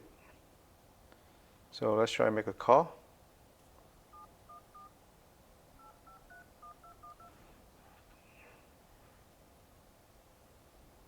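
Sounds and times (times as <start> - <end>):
keypad dialing beeps: 4.1 - 4.9, 5.8 - 7.3.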